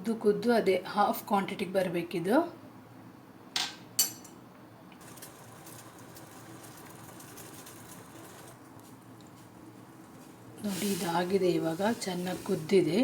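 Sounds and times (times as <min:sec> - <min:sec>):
liquid bubbling at a boil: 0:05.0 - 0:08.7.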